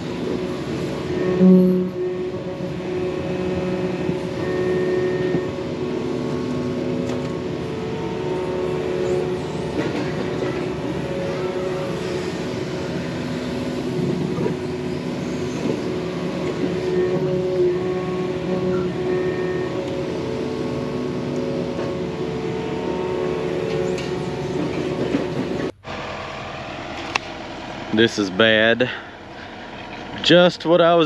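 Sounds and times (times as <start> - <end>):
excavator engine running: 0.0 - 31.0
hydraulic whine: 0.0 - 31.0.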